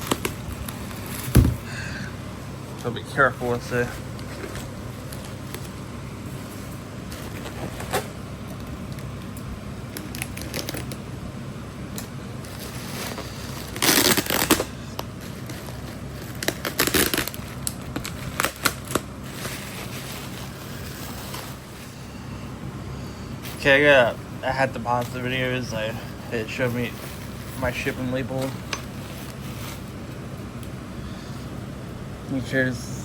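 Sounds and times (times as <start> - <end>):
packaging clicks: 0.0 - 1.4, 7.2 - 11.0, 11.9 - 20.5
packaging rustling and crinkling: 0.0 - 1.7, 3.7 - 5.8, 6.4 - 11.1, 12.4 - 22.0, 24.9 - 30.2
steady low hum: 0.0 - 33.0.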